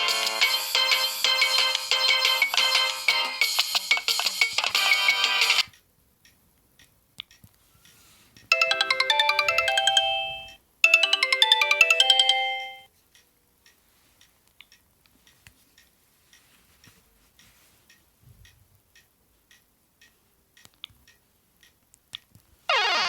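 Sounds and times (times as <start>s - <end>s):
mobile phone jingle: 8.5s - 12.9s.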